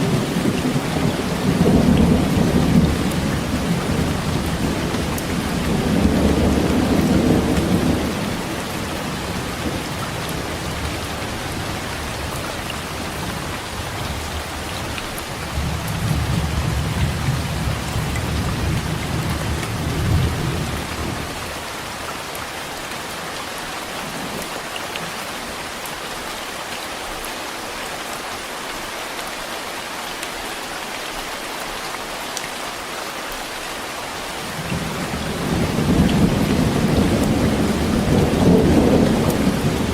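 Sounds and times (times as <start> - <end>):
heavy rain: 0.0 - 39.9
rolling thunder: 34.6 - 39.9.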